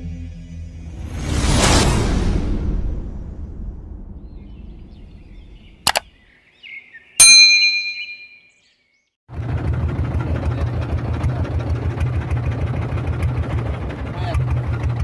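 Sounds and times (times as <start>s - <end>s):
boat engine rumbling: 4.3s - 6.2s, 9.3s - 15.0s
sharp click: 5.8s - 6.1s
bright metallic ding: 7.2s - 8.5s.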